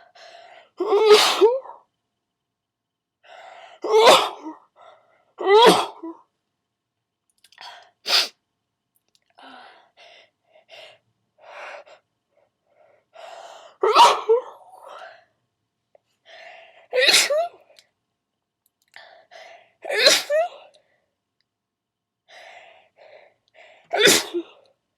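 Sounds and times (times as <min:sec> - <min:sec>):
person sneezing: 0:17.0 - 0:17.6, 0:19.8 - 0:20.6, 0:23.9 - 0:24.6.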